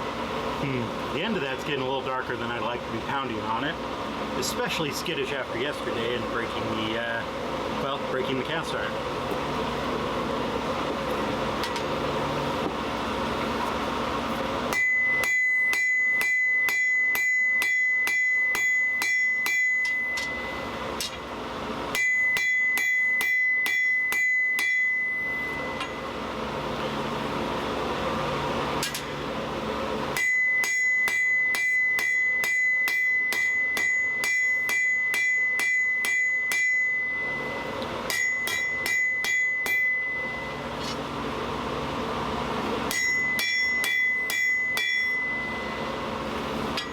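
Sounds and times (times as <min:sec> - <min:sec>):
hammer ringing on anvil: 0:14.7 - 0:21.2, 0:21.9 - 0:26.2, 0:30.2 - 0:40.8, 0:42.9 - 0:46.9.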